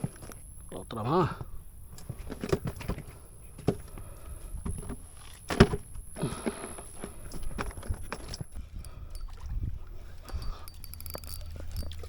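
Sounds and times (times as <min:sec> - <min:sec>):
knocks and thumps on boat: 0:01.4 - 0:06.6.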